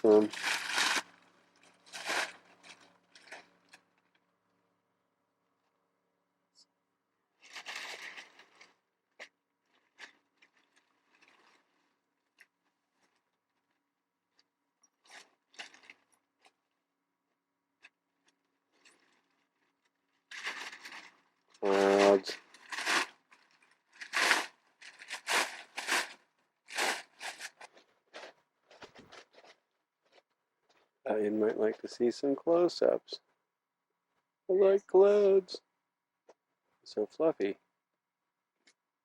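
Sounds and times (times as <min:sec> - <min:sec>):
faint clicks and rustles: 0:00.3 - 0:04.3, 0:07.4 - 0:31.0.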